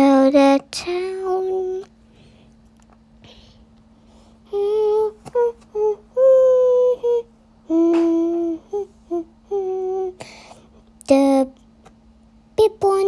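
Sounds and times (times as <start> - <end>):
child humming: 4.5 - 10.2.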